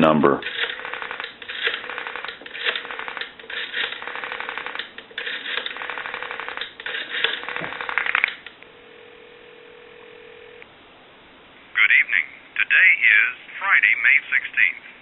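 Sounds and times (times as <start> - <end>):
rotary telephone dial clicking: 0.4 - 8.6
telephone ringback tone: 8.7 - 10.6.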